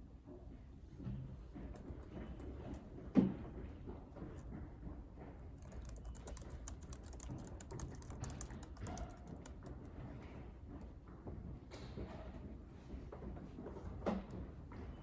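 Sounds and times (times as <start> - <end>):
keyboard typing clicks: 5.6 - 9.9.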